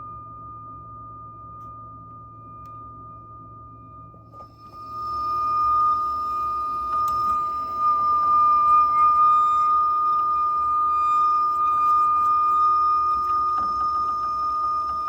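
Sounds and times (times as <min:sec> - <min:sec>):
gas boiler whistling: 0:04.4 - 0:15.0.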